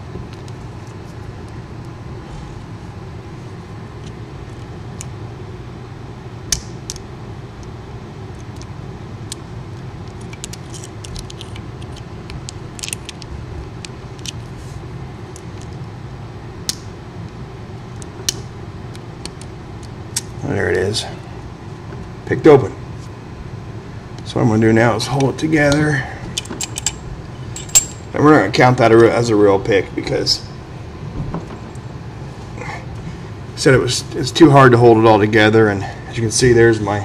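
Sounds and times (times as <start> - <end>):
low background hum: 0.0 - 37.0
lock picks clicking on padlock: 26.4 - 27.0.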